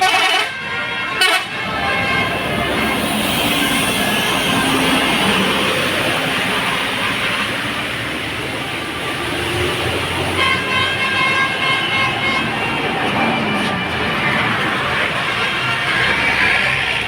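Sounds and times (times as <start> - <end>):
multi-note bus horn: 0.0 - 5.3, 10.2 - 16.6
bus passing: 0.0 - 17.0
road traffic: 0.0 - 17.0.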